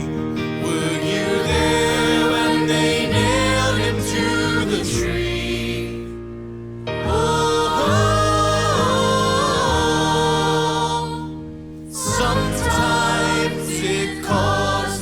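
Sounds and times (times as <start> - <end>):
vocal group singing a hymn: 0.0 - 15.0.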